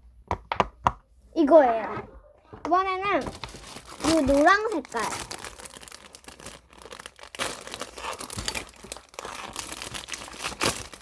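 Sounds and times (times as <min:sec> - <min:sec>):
plastic packaging rustling and tearing: 0:02.7 - 0:11.0.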